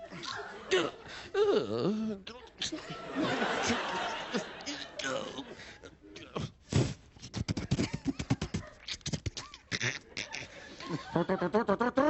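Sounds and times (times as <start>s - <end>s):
man making mouth clicks and pops: 6.4s - 10.5s
wavering vocal noise: 7.2s - 12.0s.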